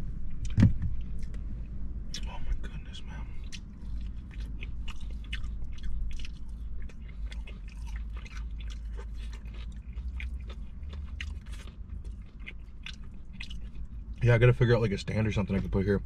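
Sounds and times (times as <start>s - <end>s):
steady low hum: 0.0s - 16.0s
crunchy chewing: 3.2s - 14.2s.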